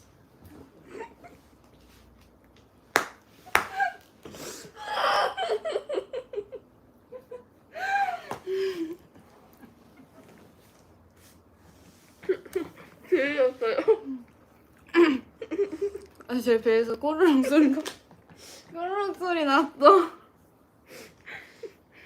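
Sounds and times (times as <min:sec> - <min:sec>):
sharp hand claps: 0:02.9 - 0:03.8
young women laughing: 0:03.5 - 0:04.0, 0:04.8 - 0:09.0.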